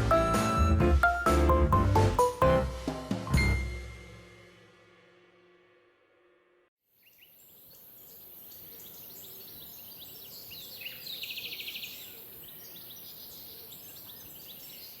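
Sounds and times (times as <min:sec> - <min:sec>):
wild birds chirping: 0:07.0 - 0:15.0.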